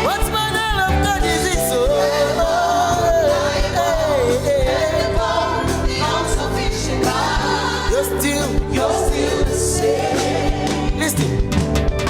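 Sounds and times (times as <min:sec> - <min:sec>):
lead voice singing: 0:00.0 - 0:11.6
band with steady drumbeat: 0:00.0 - 0:12.0
backing choir: 0:01.6 - 0:11.2.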